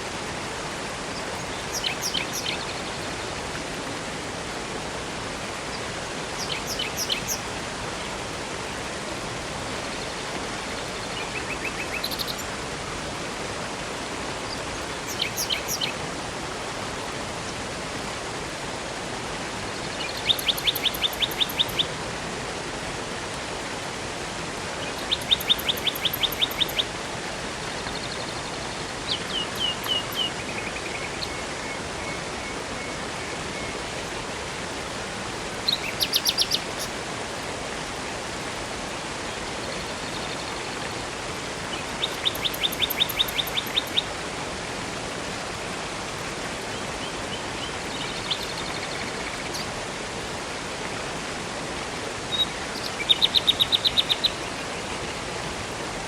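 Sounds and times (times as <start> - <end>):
river and waterfall rushing: 0.0 - 56.0
songbird trilling: 1.5 - 2.7, 6.4 - 7.4, 11.4 - 12.5, 15.1 - 15.9, 20.1 - 21.9, 24.8 - 26.9, 29.2 - 30.3, 35.7 - 36.9, 42.0 - 44.0.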